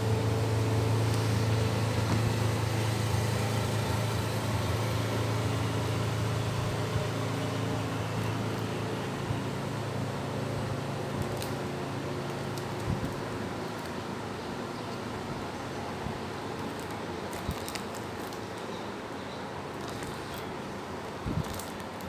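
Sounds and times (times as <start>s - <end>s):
low hum: 0.0s - 13.2s
constant hiss: 0.0s - 22.0s.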